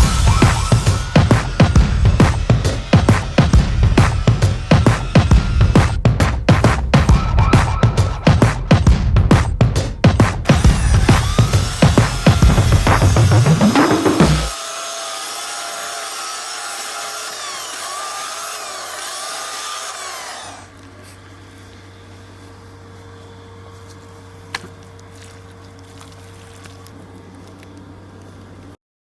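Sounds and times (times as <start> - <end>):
chainsaw cutting: 0.0 - 6.0, 10.4 - 21.2.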